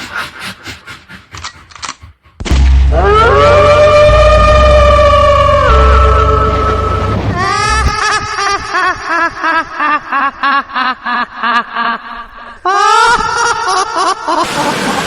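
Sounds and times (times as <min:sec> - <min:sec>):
loud rising wail: 0:02.8 - 0:08.1
spooky cackling laugh: 0:05.7 - 0:15.0.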